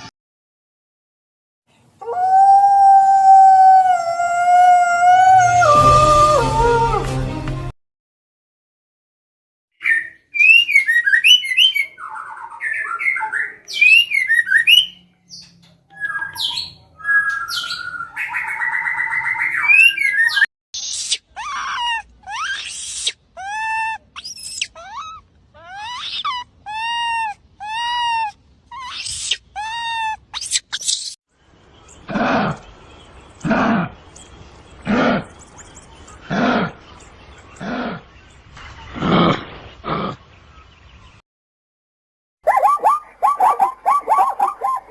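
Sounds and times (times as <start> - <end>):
bird chirps and whistles: 9.8 - 21.2, 42.4 - 44.9.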